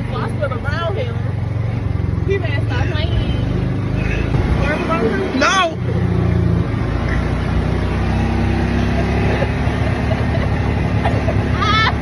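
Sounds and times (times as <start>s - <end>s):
road noise: 0.0s - 12.0s
golf cart motor hum: 4.8s - 12.0s.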